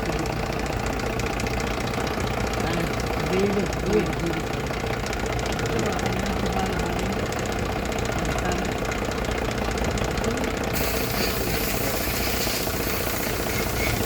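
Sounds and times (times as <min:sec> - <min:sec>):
car engine idling: 0:00.0 - 0:14.0
hiss: 0:10.8 - 0:14.0
fast knocking tick: 0:11.8 - 0:14.0.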